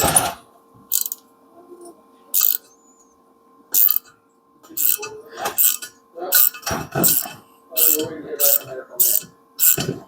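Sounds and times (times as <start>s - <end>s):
socket ratchet metallic clicks: 0.9s - 1.2s, 2.4s - 2.6s, 7.8s - 9.8s.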